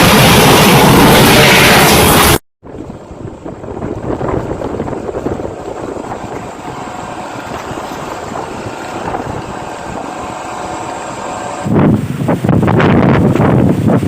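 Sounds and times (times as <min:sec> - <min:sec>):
strong wind on microphone: 0:00.0 - 0:14.0.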